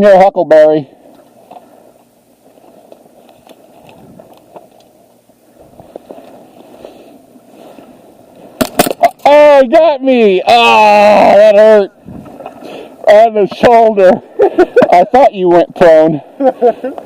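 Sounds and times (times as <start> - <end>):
faint rustling: 1.0 - 9.2.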